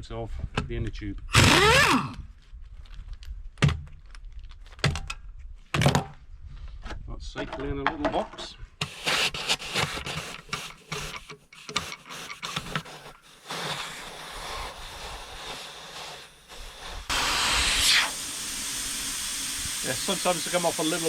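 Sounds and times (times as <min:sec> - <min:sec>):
air hissing out of tyre: 0:08.9 - 0:21.0.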